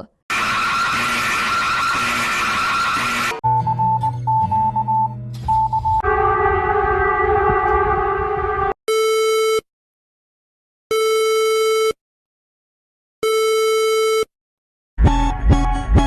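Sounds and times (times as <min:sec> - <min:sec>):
harsh buzzing alert tone: 0:00.3 - 0:03.4
long electronic beeps: 0:00.3 - 0:08.8.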